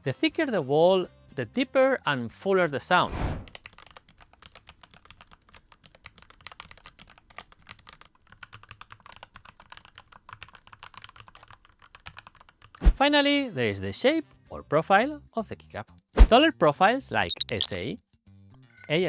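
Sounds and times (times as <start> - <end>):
mechanical keyboard typing: 3.5 - 12.8, 17.3 - 17.8.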